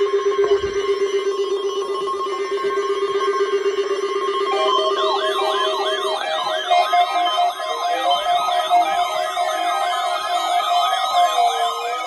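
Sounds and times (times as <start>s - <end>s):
alarm test tone: 0.0s - 12.0s
alert siren warbling: 4.5s - 12.0s.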